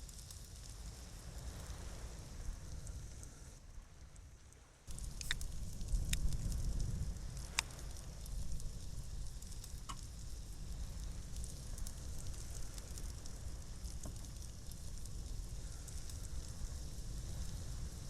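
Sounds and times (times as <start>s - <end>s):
small crackles and spatters: 0.0s - 18.0s
steady low rumble: 4.9s - 18.0s.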